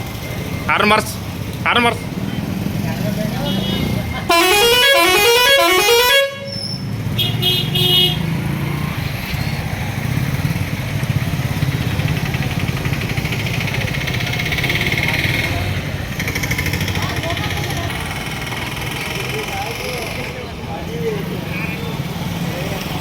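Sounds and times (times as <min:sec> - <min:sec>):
vehicle air horn: 0:03.5 - 0:08.4
engine idling: 0:09.2 - 0:23.0.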